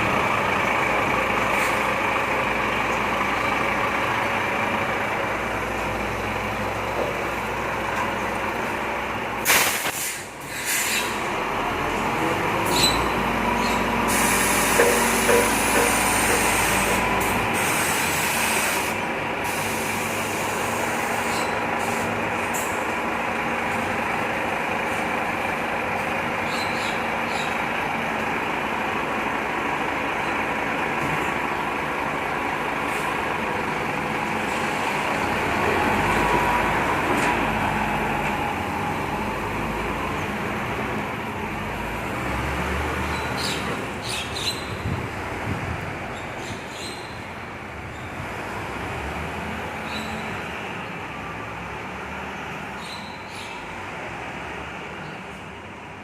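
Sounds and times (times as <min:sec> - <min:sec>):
truck engine running: 0:00.0 - 0:09.8, 0:11.2 - 0:46.2
air brake hiss: 0:09.4 - 0:11.2, 0:14.0 - 0:22.8.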